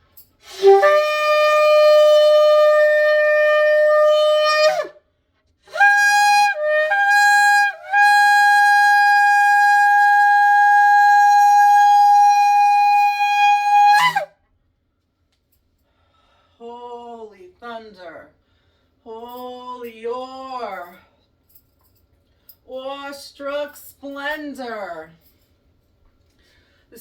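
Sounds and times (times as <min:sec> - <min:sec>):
shofar blasts: 0:00.4 - 0:05.0, 0:05.7 - 0:14.3.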